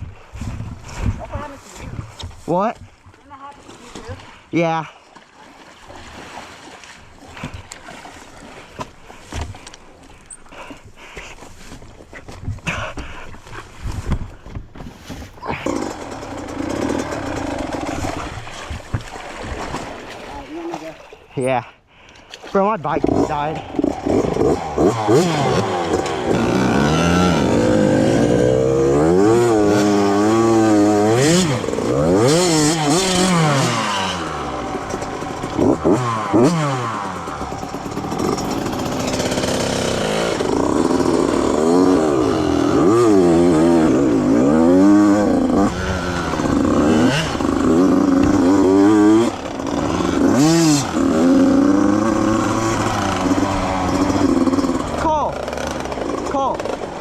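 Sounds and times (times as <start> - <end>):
dirt bike engine revving: 15.4 - 18.5, 22.9 - 57.0.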